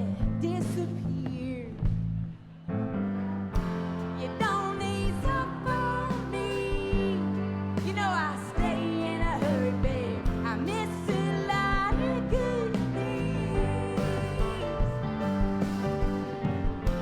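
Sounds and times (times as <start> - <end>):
country rock band playing: 3.6 - 17.0.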